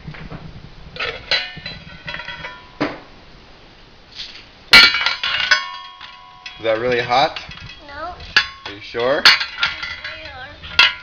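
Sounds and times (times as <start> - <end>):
metal pot and utensils clinking: 1.0 - 2.8, 4.7 - 11.0.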